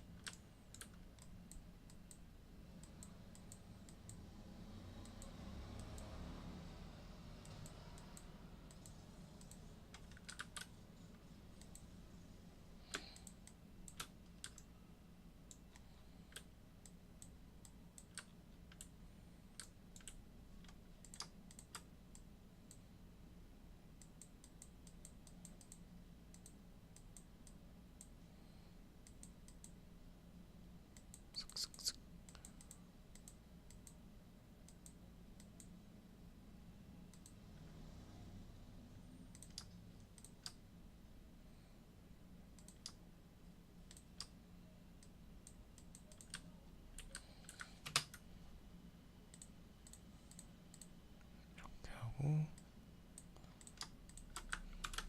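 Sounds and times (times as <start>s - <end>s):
keyboard and mouse clicks: 0.0s - 12.0s, 12.8s - 14.7s, 15.4s - 22.9s, 23.9s - 28.2s, 29.0s - 29.8s, 30.9s - 34.0s, 34.6s - 35.8s, 37.1s - 37.7s, 39.2s - 40.6s, 42.5s - 43.0s, 43.8s - 44.4s, 45.0s - 48.3s, 49.3s - 51.0s, 53.1s - 55.0s
low steady hum: 0.0s - 55.0s.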